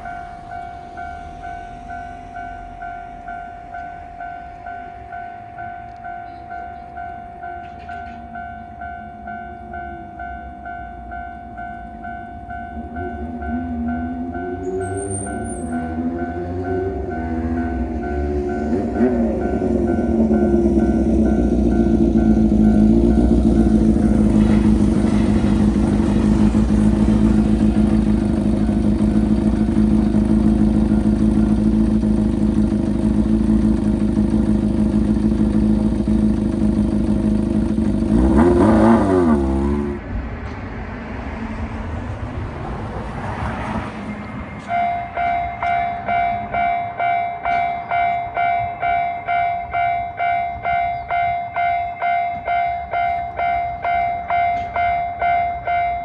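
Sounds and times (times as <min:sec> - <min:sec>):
loud engine drone: 0:00.0 - 0:03.8, 0:11.3 - 0:41.4
railroad crossing warning bell: 0:00.0 - 0:40.0, 0:44.1 - 0:56.0.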